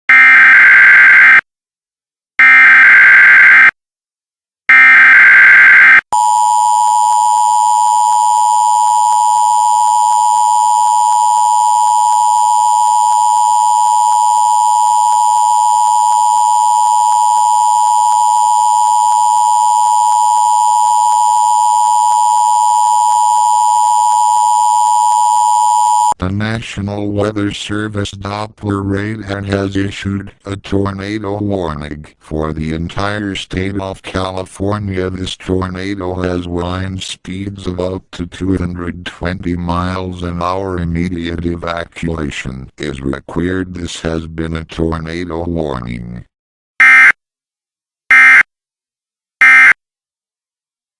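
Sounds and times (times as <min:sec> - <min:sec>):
two-tone attention signal: 0:48.1 - 0:48.4, 0:49.4 - 0:49.8.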